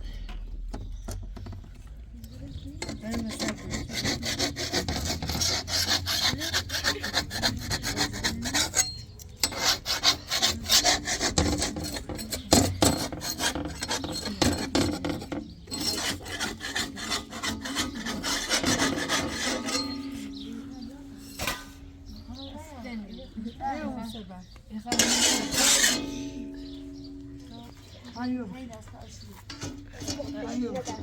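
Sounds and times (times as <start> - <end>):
rasping scraping strokes: 2.8 - 22.5, 24.9 - 28.1, 29.4 - 31.0.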